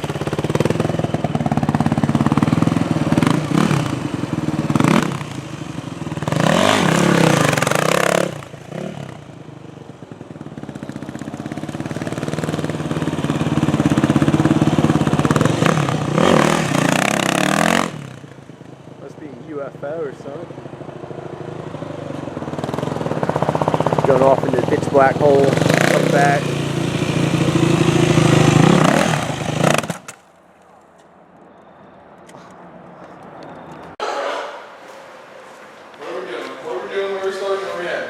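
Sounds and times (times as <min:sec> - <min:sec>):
dirt bike engine revving: 0:00.0 - 0:30.1.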